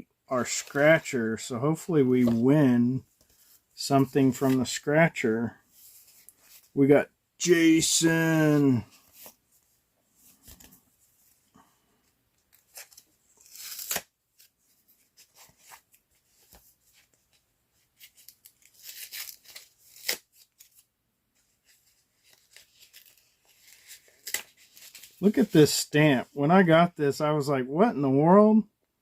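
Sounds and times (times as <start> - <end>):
paper rustling and crinkling: 12.5 - 25.6.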